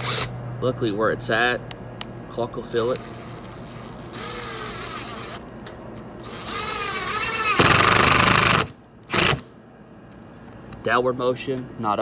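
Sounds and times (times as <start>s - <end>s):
power drill motor whining: 0.0s - 0.3s, 2.8s - 9.4s.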